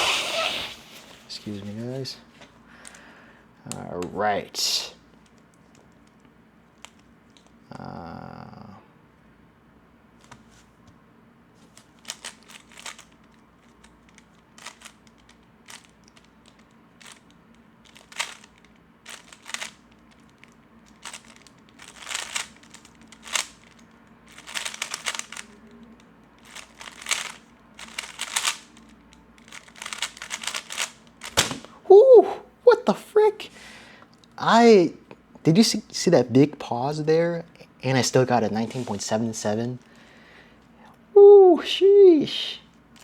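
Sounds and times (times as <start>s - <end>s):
puzzle cube clacking: 11.7s - 31.8s.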